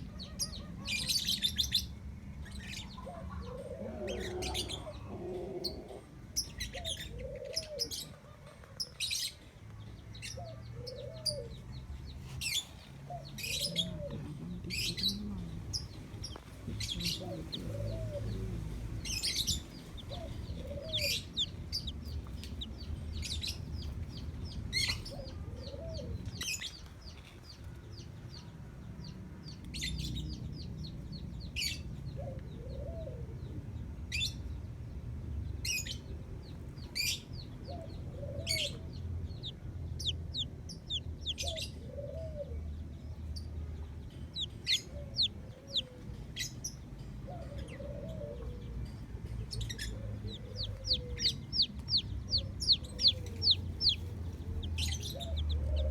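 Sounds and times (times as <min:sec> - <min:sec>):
steady low rumble: 0:14.4 - 0:25.1, 0:37.9 - 0:41.6, 0:44.2 - 0:46.4, 0:48.9 - 0:55.9
chicks peeping: 0:14.9 - 0:26.9, 0:37.8 - 0:42.1, 0:44.3 - 0:45.9, 0:49.4 - 0:55.9
chicken clucking: 0:16.3 - 0:22.9, 0:45.1 - 0:46.0, 0:49.9 - 0:55.9.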